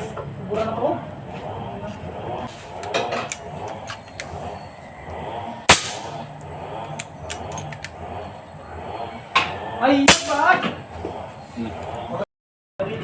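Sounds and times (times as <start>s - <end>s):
airgun shot: 5.7s - 6.2s, 10.1s - 10.4s.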